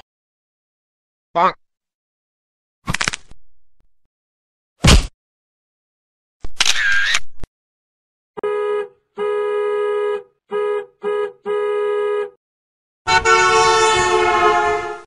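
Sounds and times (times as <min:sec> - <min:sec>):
horn honks: 0:08.4 - 0:12.4, 0:13.0 - 0:15.0
two-toned horn blast: 0:08.4 - 0:12.4, 0:13.1 - 0:15.0.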